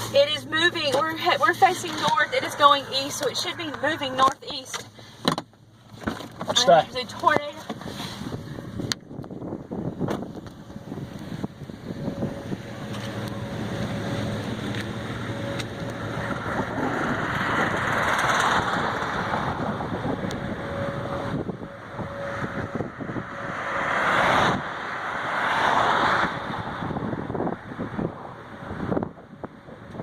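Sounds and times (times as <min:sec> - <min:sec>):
wind buffeting microphone: 0:07.7 - 0:30.0.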